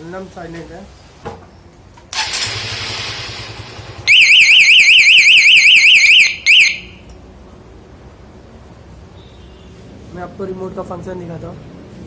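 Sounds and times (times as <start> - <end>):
alarm siren warbling: 4.0 - 7.0.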